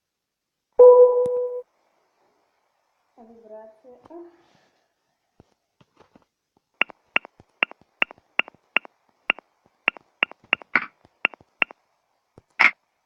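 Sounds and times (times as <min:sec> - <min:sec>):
phone keyboard taps: 0:07.2 - 0:08.9, 0:09.9 - 0:11.5.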